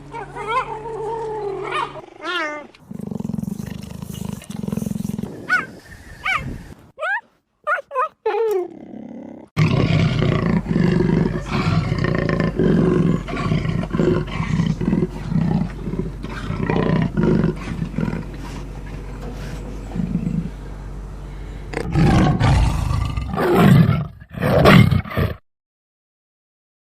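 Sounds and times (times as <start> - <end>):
big cat roaring grunts: 2.0 - 5.4, 8.7 - 20.6, 21.7 - 25.4.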